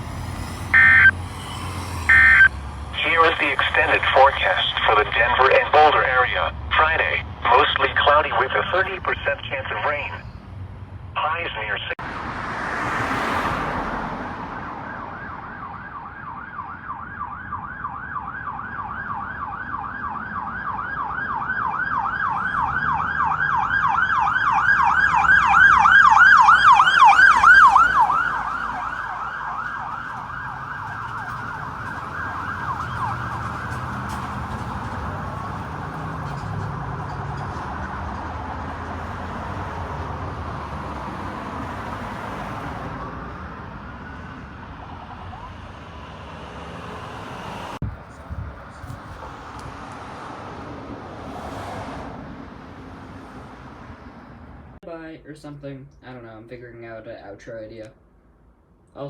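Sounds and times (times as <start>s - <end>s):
traffic rumble: 0.0s - 55.4s
siren yelping: 0.8s - 1.2s, 2.1s - 10.2s, 14.6s - 33.8s.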